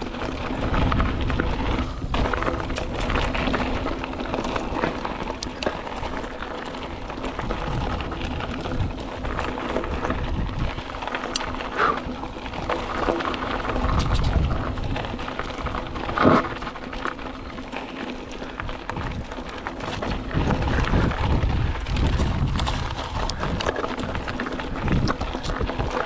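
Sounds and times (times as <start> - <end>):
bike chain and frame rattling: 0.0 - 26.0
bike tyres crunching over dirt: 0.0 - 26.0
wind buffeting microphone: 0.0 - 26.0.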